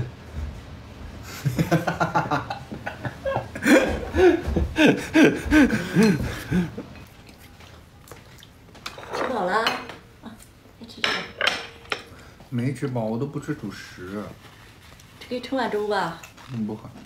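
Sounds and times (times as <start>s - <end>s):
laughter: 1.3s - 6.9s.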